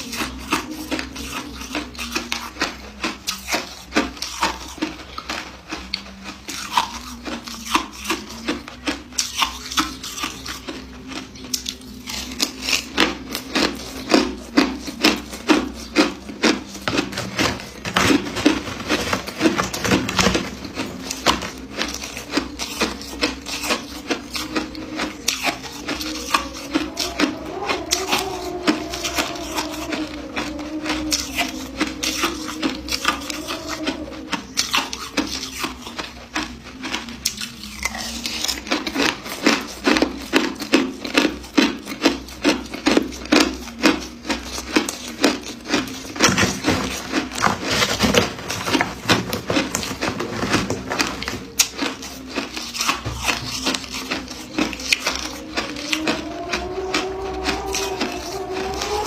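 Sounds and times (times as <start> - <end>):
ice being chewed: 0.0 - 59.0
low wavering tone: 19.6 - 41.2, 42.5 - 59.0.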